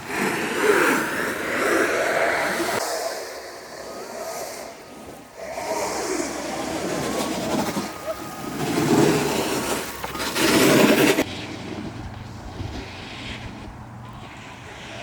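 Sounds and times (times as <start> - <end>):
wind on microphone: 0.0 - 15.0
board wheels rumbling on pavement: 3.4 - 15.0.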